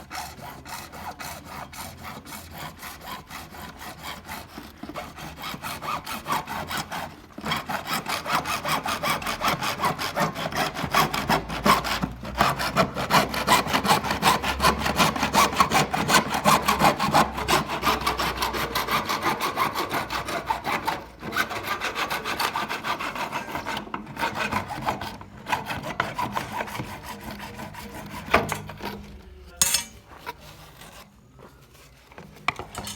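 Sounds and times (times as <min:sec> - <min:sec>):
hand saw cutting pipe: 0:00.0 - 0:31.1, 0:32.5 - 0:32.9.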